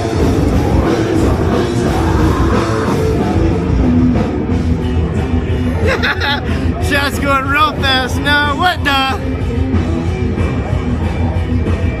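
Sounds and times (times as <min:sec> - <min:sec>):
drums: 0:00.0 - 0:12.0
heavy distorted rock music: 0:00.0 - 0:12.0.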